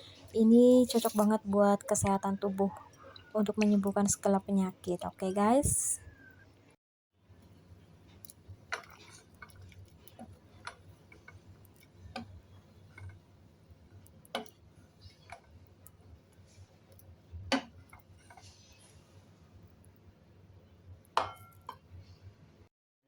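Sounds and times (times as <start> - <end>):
spoon clinking: 0.8 - 1.4
spoon tapping a bowl: 21.2 - 21.7.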